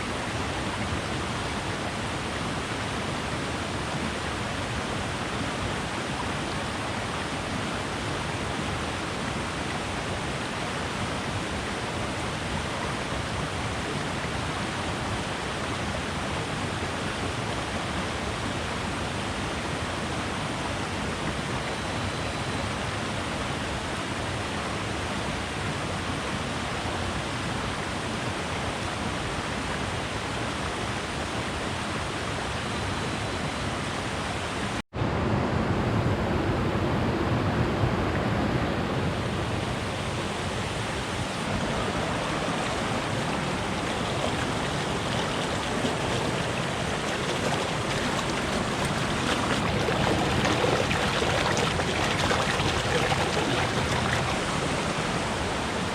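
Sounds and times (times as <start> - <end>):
waterfall rushing: 39.3 - 55.9.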